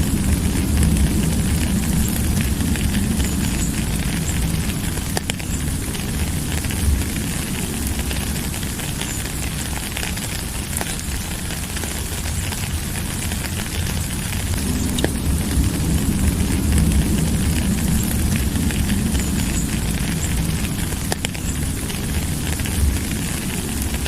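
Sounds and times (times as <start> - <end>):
deep rumble: 0.0 - 24.0
rain hiss: 0.0 - 24.0
raindrop ticks: 0.0 - 24.0.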